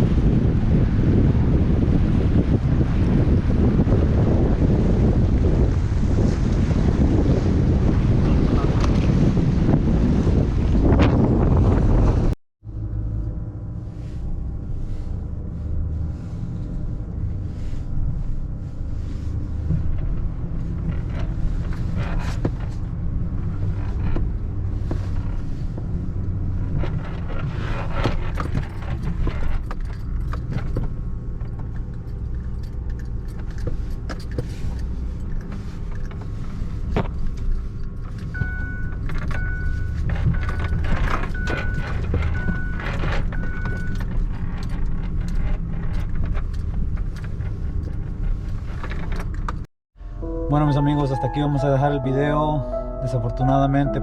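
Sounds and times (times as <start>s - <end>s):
vehicle engine rumbling: 0.0s - 54.0s
clicks and rattles: 26.8s - 36.3s, 38.9s - 49.7s.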